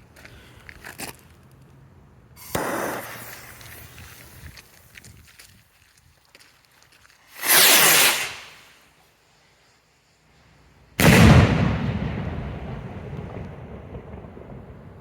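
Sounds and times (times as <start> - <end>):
firework rocket launching whoosh: 2.4 - 4.4, 7.3 - 8.8
loud firework bang echoing: 2.5 - 3.4, 11.0 - 15.0.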